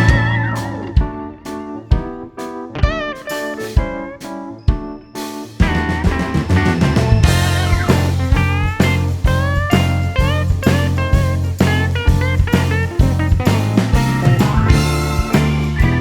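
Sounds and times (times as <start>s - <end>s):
bass: 0.0s - 1.3s, 5.6s - 16.0s
blues-rock electric guitar: 0.0s - 16.0s
steady drum beat: 0.0s - 16.0s.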